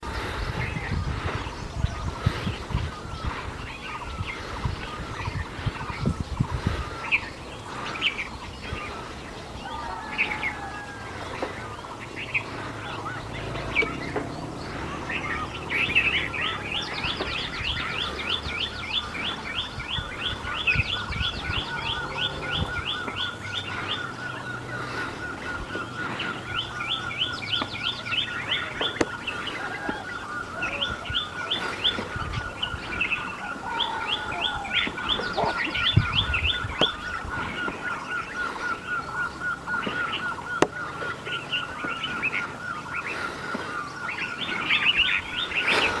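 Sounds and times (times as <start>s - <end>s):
songbirds chirping: 0.0s - 46.0s
high bird trill: 11.9s - 43.1s
bird's quick repeated chirps: 12.0s - 25.1s.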